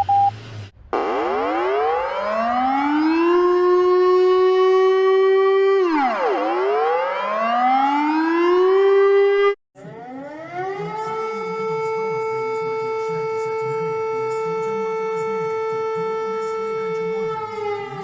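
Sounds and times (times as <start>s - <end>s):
civil defense siren winding up: 0.9s - 18.0s.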